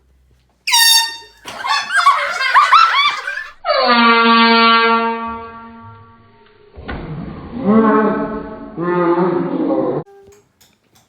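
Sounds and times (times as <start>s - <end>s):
high-pitched voices shrieking: 0.7s - 3.6s
air horn: 0.7s - 6.4s.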